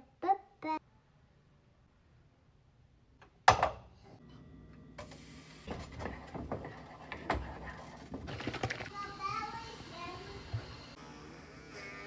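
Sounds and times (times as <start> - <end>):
kitchen knocks and clicks: 3.4 - 3.9.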